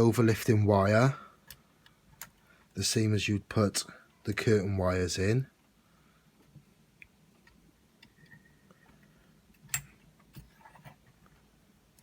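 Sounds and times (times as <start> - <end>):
lock picking metallic clicks: 9.6 - 10.5.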